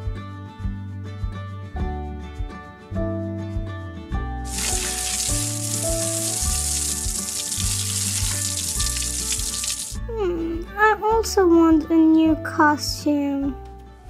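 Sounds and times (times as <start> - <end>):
water running: 4.4 - 10.1
music with steady beat: 4.5 - 10.7.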